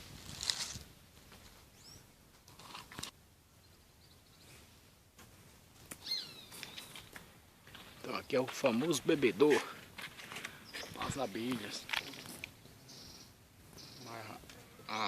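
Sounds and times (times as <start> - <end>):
bird chirps: 1.8 - 2.1, 6.0 - 7.1, 10.5 - 14.4.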